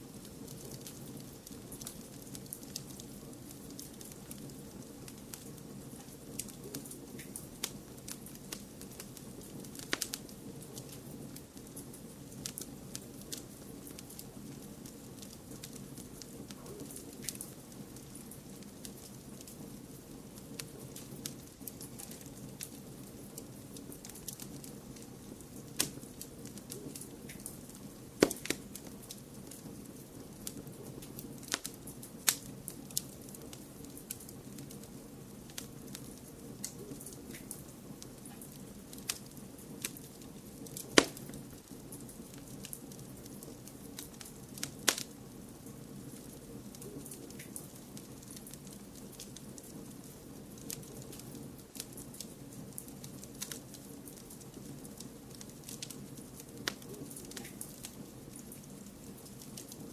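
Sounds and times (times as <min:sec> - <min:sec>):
low hiss of white noise: 0:00.0 - 0:59.9
wood fire crackling: 0:00.0 - 0:59.9
sharp fire pops: 0:05.1 - 0:11.0, 0:25.6 - 0:27.6, 0:28.2 - 0:29.6, 0:30.4 - 0:34.8, 0:35.5 - 0:49.8.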